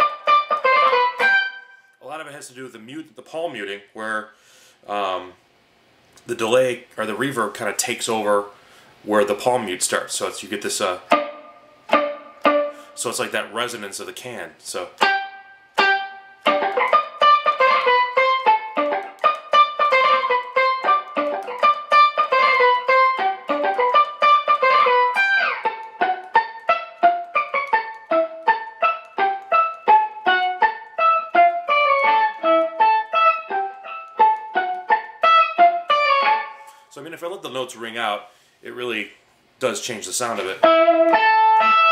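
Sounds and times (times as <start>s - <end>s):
electric guitar staccato notes: 0.0s - 1.8s, 10.8s - 13.8s, 14.9s - 36.8s, 40.2s - 41.9s.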